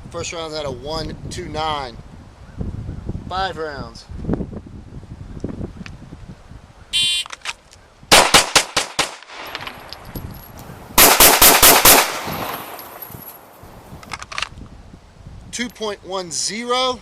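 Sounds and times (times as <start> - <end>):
shot timer buzzer beep: 7.0 - 7.2
rapid handgun shots: 8.1 - 9.6, 11.0 - 12.8.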